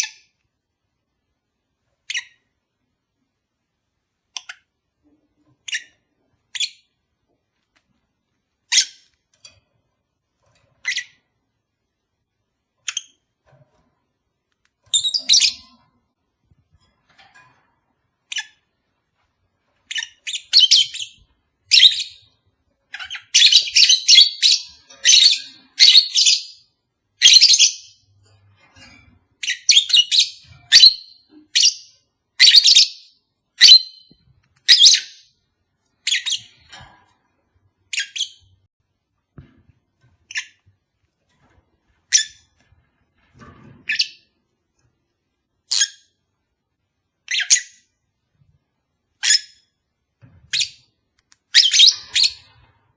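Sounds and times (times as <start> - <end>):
lovebird chirping: 5.6 - 6.9, 8.7 - 9.1, 14.9 - 15.8, 19.9 - 22.3, 22.9 - 28.1, 29.4 - 35.4, 36.0 - 36.6, 47.2 - 47.9, 51.5 - 52.5.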